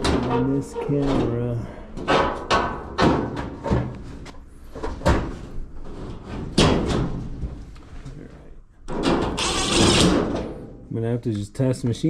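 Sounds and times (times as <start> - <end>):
metal cabinet parts clunking: 0.0 - 7.6, 8.9 - 10.7.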